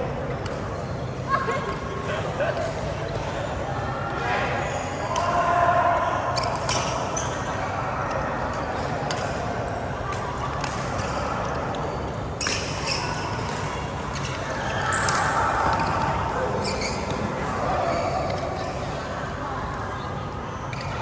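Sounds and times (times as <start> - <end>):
shoes squeaking on court floor: 12.0 - 19.0
rackets hitting shuttlecock: 12.4 - 16.0.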